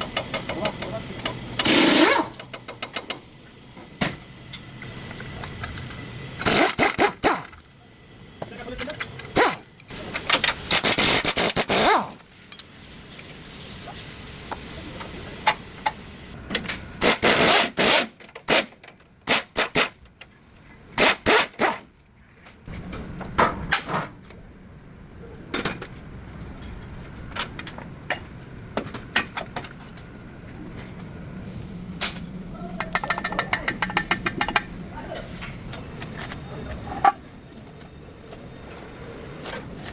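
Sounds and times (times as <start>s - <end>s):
sharp knocks and clicks: 32.8s - 34.7s.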